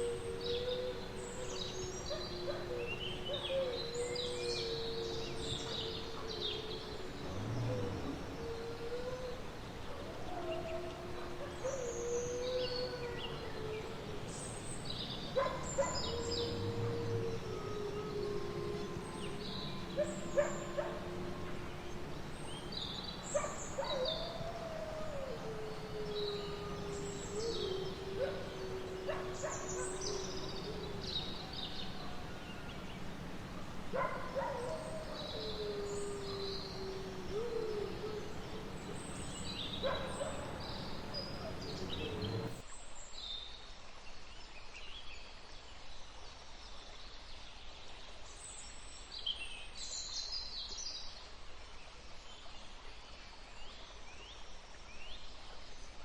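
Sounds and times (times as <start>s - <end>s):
small birds chirping: 0.0s - 42.6s
wolf howling: 0.0s - 42.6s
background hiss: 0.0s - 56.0s.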